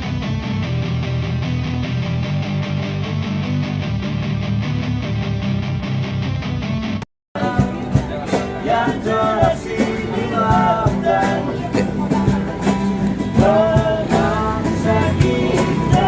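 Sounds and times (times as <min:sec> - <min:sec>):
person singing with guitar: 0:07.4 - 0:16.0
steady beat: 0:07.4 - 0:16.0.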